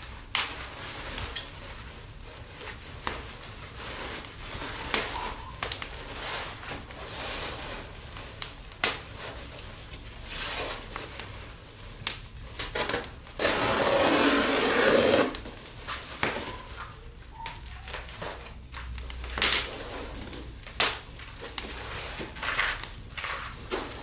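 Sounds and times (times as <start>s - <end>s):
sheet crumpling and scraping: 0.0s - 24.0s.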